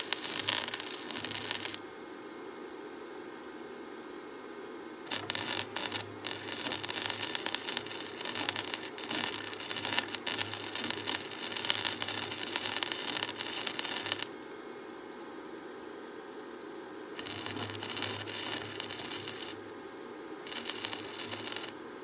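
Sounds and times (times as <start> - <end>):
welding arc crackling and sizzling: 0.0 - 1.8, 5.1 - 14.4, 17.2 - 19.7, 20.5 - 21.8
welder low hum: 0.0 - 1.9, 5.1 - 14.6, 17.2 - 19.8, 20.5 - 21.8.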